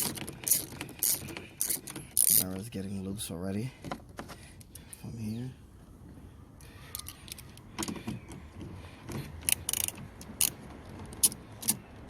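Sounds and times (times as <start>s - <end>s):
loose mirror rattling: 0.0s - 6.1s, 7.0s - 11.8s
socket wrench clicking: 9.4s - 11.8s.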